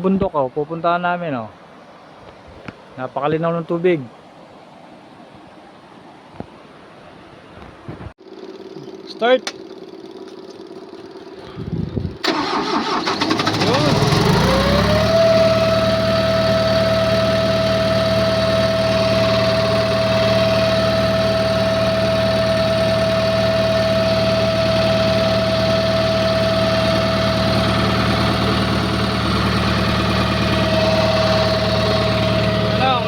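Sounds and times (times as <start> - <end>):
diesel engine idling: 8.3 - 33.0
high whine: 14.6 - 33.0.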